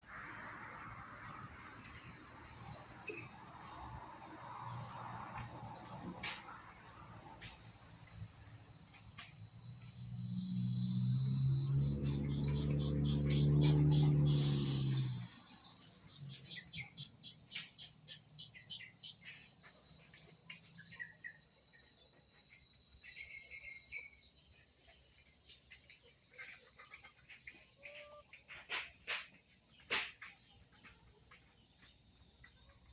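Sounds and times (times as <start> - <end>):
crickets trilling: 0.0 - 32.9
chicken calling: 27.8 - 28.2.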